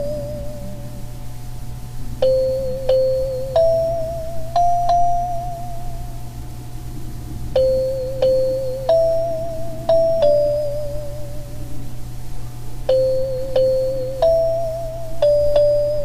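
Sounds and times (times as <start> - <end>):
steady low hum: 0.0 - 16.0
synthesizer melody: 2.2 - 6.1, 7.6 - 11.8, 12.9 - 16.0.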